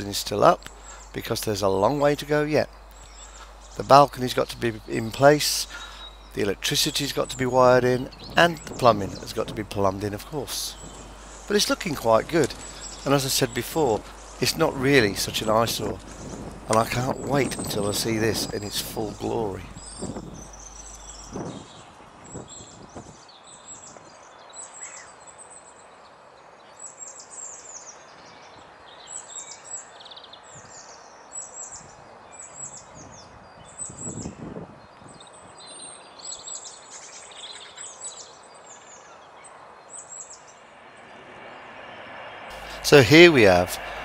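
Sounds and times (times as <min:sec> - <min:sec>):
faint outdoor hiss: 0:00.0 - 0:32.6, 0:34.5 - 0:44.0
small birds singing: 0:00.0 - 0:44.0
brief low sound: 0:40.6 - 0:44.0.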